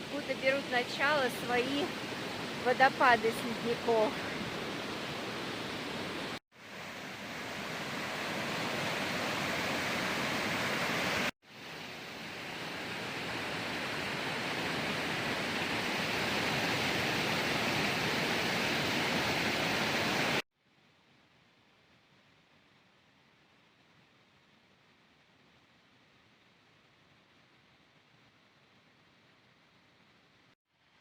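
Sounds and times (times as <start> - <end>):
waterfall rushing: 0.7 - 11.3.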